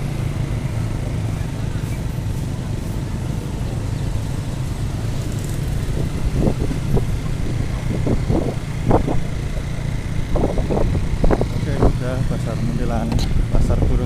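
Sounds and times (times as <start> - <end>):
road traffic rumble: 0.0 - 14.0
voices: 0.9 - 14.0.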